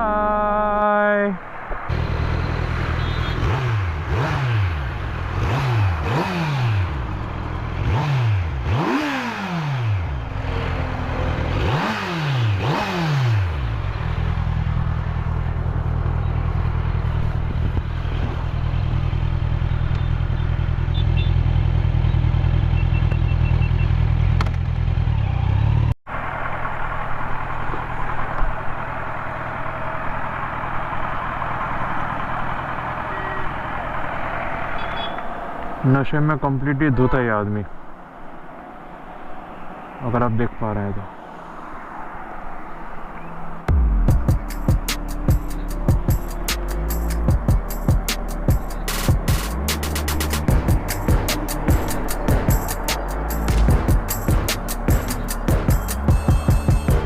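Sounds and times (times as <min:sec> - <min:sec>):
road and traffic noise: 0:00.0 - 0:57.0
motorcycle engine revving: 0:01.9 - 0:26.0, 0:43.6 - 0:57.0.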